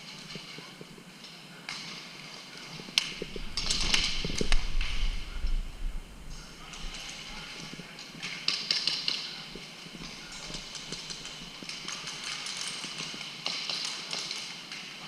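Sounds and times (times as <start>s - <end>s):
airsoft gun clicks and clatter: 3.0s - 5.1s, 6.6s - 15.0s
low rumble: 3.2s - 7.3s.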